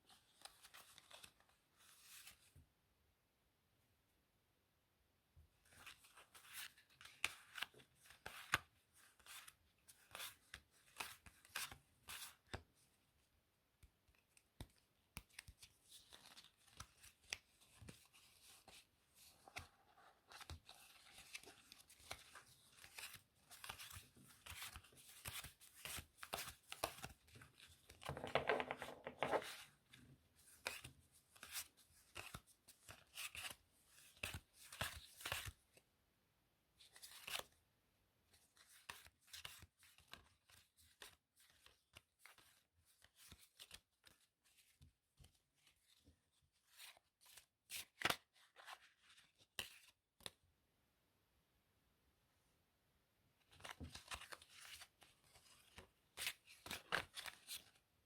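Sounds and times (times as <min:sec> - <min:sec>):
playing cards snapping and tapping: 0:27.9 - 0:29.5.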